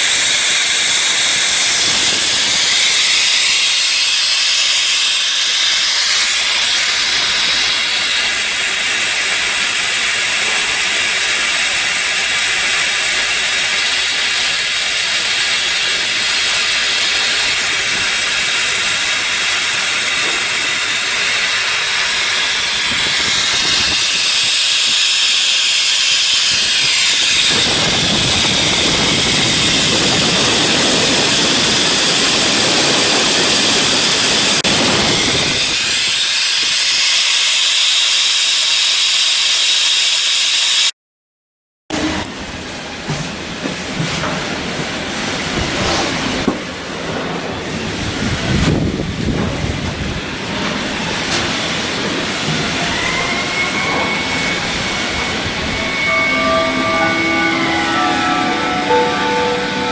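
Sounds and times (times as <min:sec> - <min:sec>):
loud steady hissing: 0:00.0 - 0:40.9, 0:51.6 - 0:59.9
low rushing: 0:53.4 - 0:59.9.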